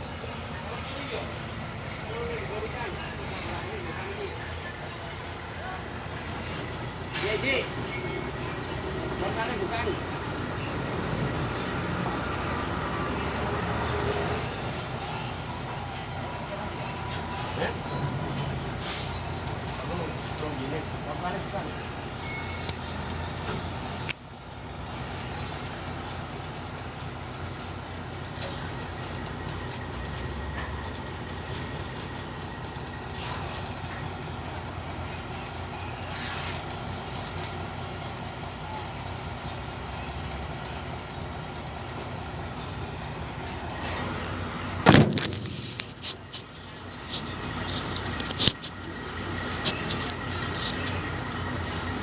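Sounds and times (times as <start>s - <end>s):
diesel engine running: 0.0s - 52.0s
clanks and knocks: 43.8s - 48.9s
loud bang: 44.8s - 46.0s.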